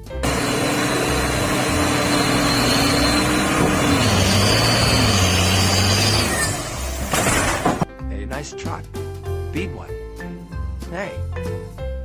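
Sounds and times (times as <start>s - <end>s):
motor running: 0.2s - 7.8s.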